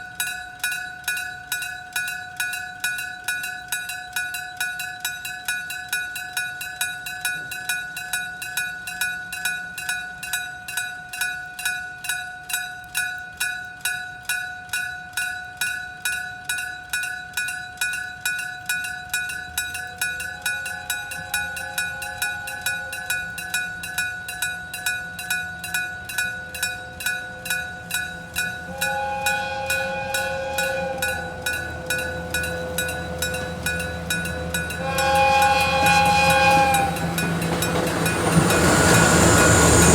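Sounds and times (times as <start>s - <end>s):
low rumble of approaching train: 19.1s - 39.9s
level crossing gong bell: 19.6s - 39.9s
steady higher tones: 20.0s - 24.3s, 26.6s - 39.9s.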